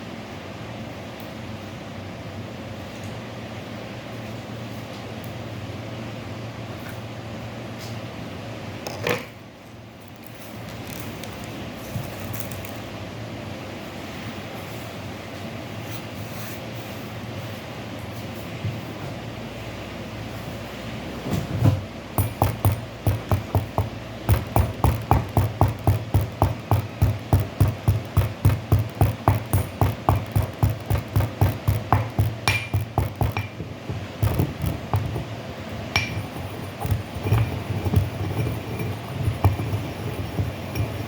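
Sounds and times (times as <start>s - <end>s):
pestle knocking in a mortar: 22.1s - 41.0s.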